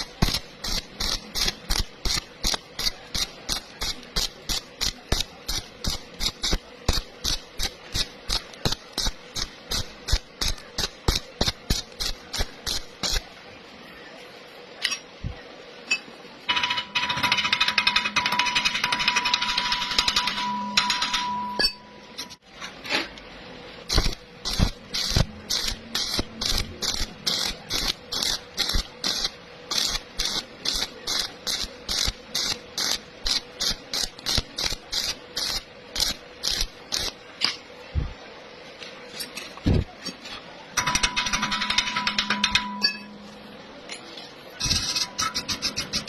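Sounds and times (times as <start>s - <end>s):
welding arc crackling: 0.0s - 13.4s, 16.5s - 21.3s, 23.8s - 38.1s, 44.6s - 46.0s
dense steady buzzing: 23.6s - 38.2s.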